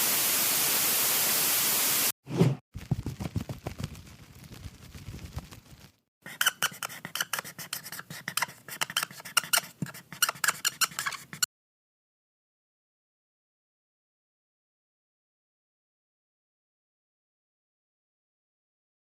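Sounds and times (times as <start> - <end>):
quick irregular clicks and scrapes: 4.8 - 11.5.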